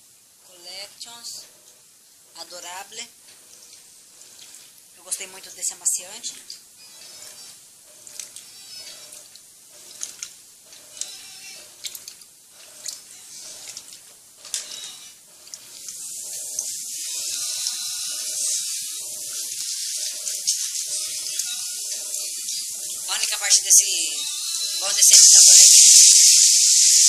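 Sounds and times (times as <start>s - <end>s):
washing machine water sloshing: 4.2s - 4.8s.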